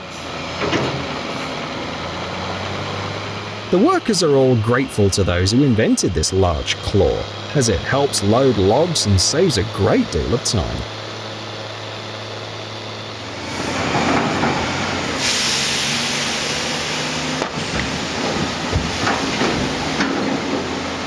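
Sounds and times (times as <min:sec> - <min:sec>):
log loader engine running: 0:00.0 - 0:21.0
loud hiss: 0:15.0 - 0:17.1.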